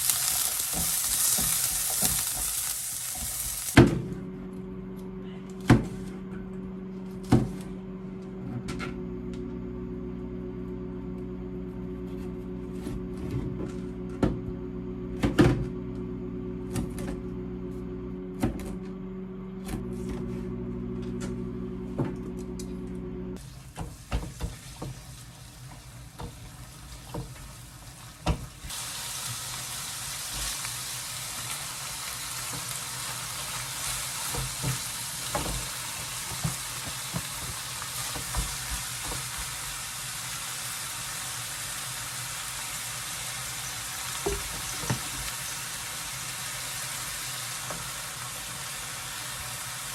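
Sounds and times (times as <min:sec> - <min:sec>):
food sizzling in a pan: 0:00.0 - 0:03.8, 0:26.7 - 0:49.9.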